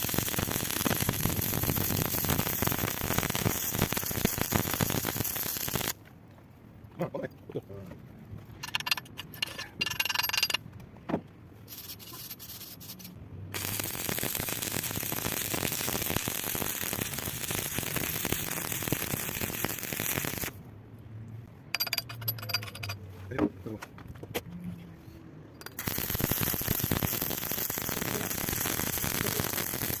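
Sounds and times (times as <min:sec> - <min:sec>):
arc welding crackle: 0:00.0 - 0:06.0, 0:13.5 - 0:20.6, 0:25.7 - 0:30.0.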